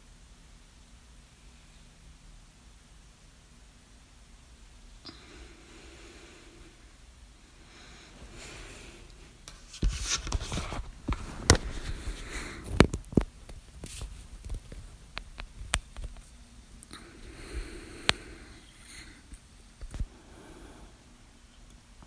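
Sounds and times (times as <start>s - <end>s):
rustling close to microphone: 7.9s - 16.6s.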